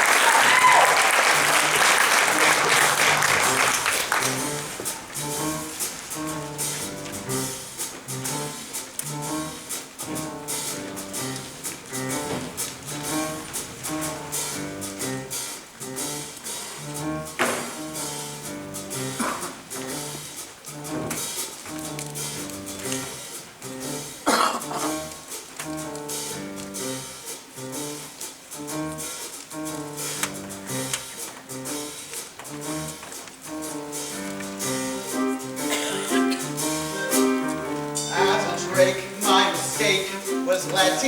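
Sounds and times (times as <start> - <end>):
audience applause: 0.0 - 6.1
instrumental stage music: 0.0 - 41.0.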